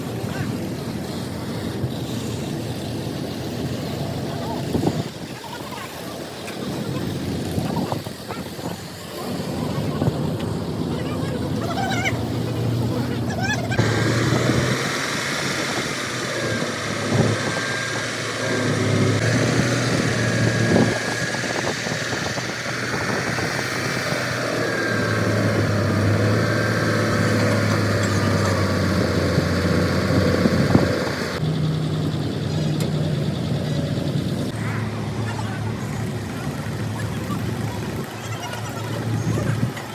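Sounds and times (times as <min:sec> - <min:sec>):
heavy engine running: 0:00.0 - 0:39.9
wavering high whine: 0:09.2 - 0:35.8.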